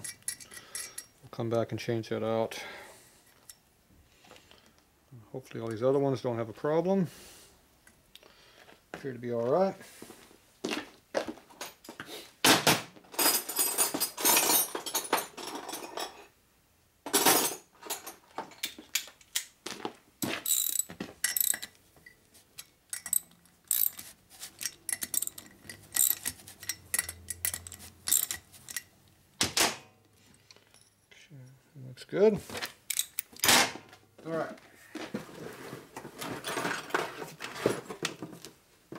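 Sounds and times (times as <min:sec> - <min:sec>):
metal parts and tools clinking: 0:00.0 - 0:01.3, 0:13.1 - 0:16.3, 0:17.1 - 0:19.6, 0:20.2 - 0:31.1, 0:32.6 - 0:33.7, 0:36.2 - 0:38.0.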